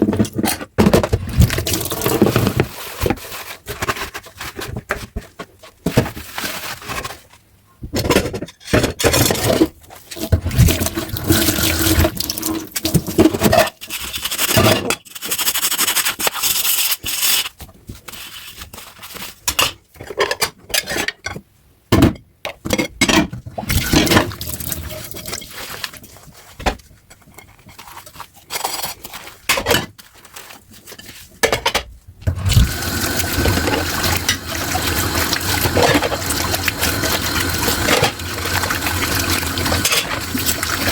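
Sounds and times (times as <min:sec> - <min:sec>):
water splashing at a sink: 0:01.2 - 0:03.2, 0:10.0 - 0:14.6, 0:23.6 - 0:26.2, 0:32.3 - 0:40.9
tap water stream: 0:32.3 - 0:40.9.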